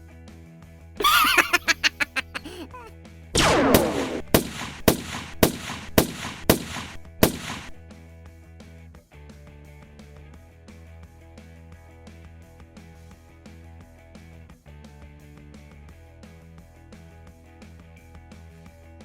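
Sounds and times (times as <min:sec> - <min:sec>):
gunshots: 0:03.4 - 0:07.8.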